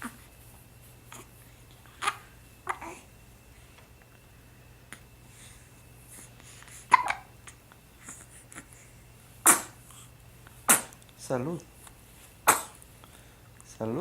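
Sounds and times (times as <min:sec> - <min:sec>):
baby hiccuping: 0:06.9 - 0:07.3, 0:09.4 - 0:09.8, 0:10.7 - 0:11.0, 0:12.4 - 0:12.8.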